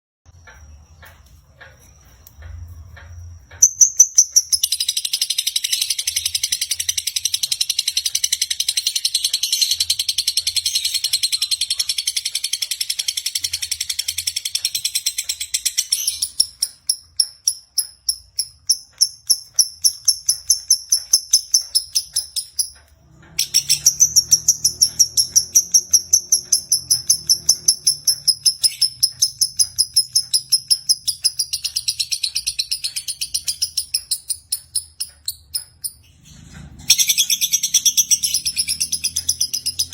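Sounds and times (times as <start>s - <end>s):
lovebird trilling and chirping: 3.5s - 22.8s, 23.4s - 36.2s, 36.9s - 39.9s.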